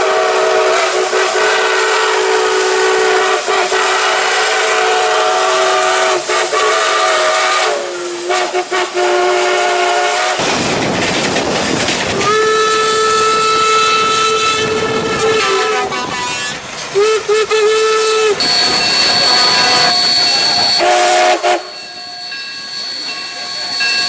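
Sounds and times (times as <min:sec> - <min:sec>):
train whistle blast: 0:00.0 - 0:10.4, 0:12.2 - 0:24.0
rushing noise: 0:18.2 - 0:24.0.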